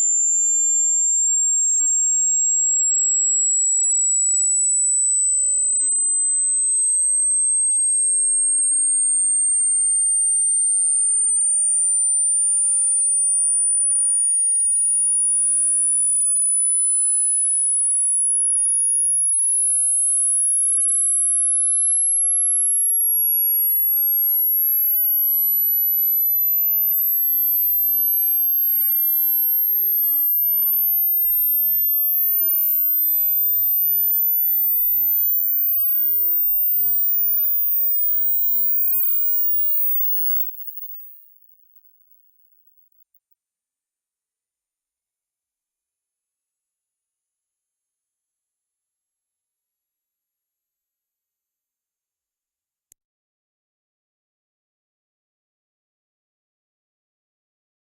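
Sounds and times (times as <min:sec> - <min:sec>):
high-pitched pure tone sweep: 0:32.8 - 0:41.3.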